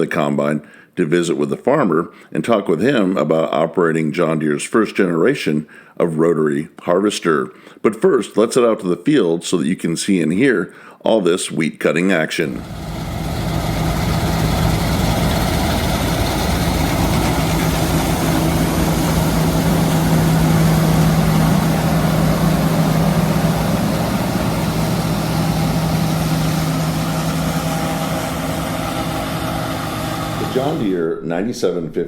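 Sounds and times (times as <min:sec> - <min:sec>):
combine harvester droning: 0:12.6 - 0:31.0.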